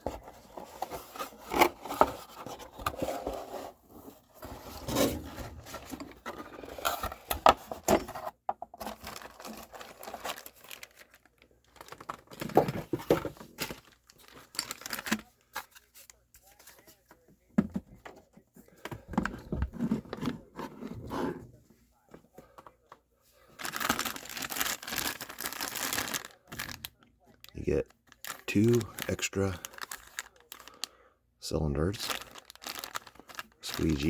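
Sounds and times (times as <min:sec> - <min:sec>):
packaging crinkling and rustling: 0:00.0 - 0:16.9, 0:23.5 - 0:31.0, 0:31.7 - 0:34.0.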